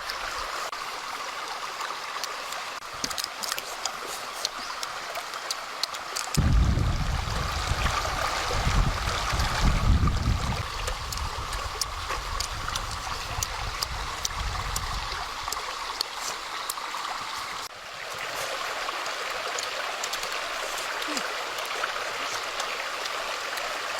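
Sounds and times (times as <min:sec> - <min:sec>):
water flowing: 0:00.0 - 0:23.9
low rumble: 0:06.4 - 0:10.7.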